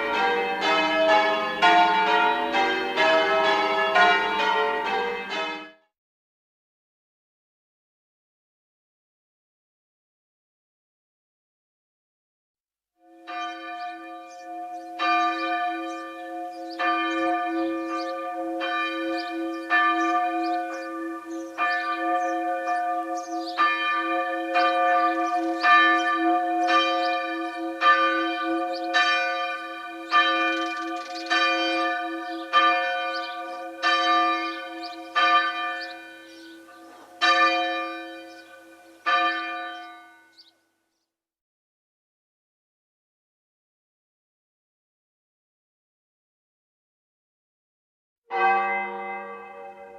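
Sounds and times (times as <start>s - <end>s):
church bell ringing: 0.0s - 5.8s, 13.1s - 40.5s, 48.3s - 49.9s.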